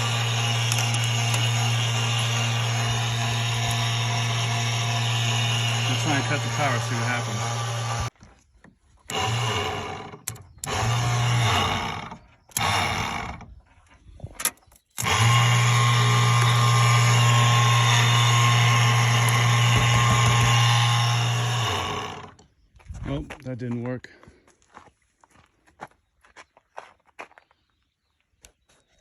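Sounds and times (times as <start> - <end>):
pump motor humming: 0.0 - 8.2, 9.1 - 13.6, 15.0 - 22.4.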